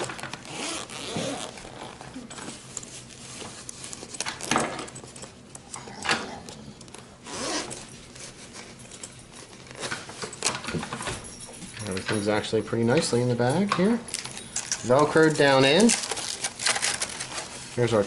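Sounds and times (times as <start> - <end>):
zipper pulled open: 0.0 - 2.4, 5.9 - 7.9
bag rustling: 0.0 - 5.4, 7.1 - 12.4.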